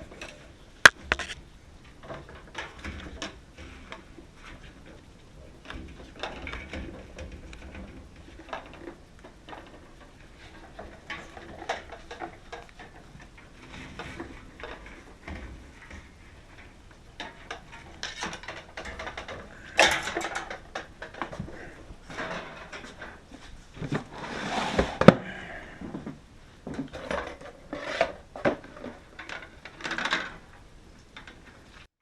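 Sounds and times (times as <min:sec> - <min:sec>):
small hard objects clattering: 0:00.2 - 0:01.4.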